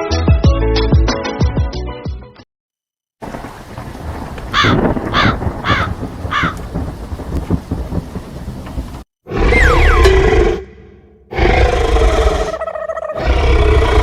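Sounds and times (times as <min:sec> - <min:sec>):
rain: 0:03.2 - 0:09.1
thunder rumbling: 0:03.2 - 0:10.1
harsh caw-like calls: 0:04.5 - 0:06.8
falling whistle effect: 0:09.4 - 0:10.2.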